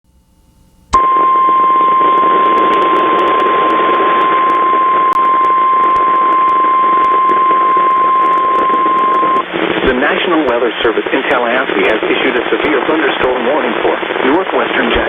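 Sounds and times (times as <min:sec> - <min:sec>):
radio receiver hiss: 0:00.9 - 0:15.0
steady high alarm tone: 0:01.0 - 0:09.5.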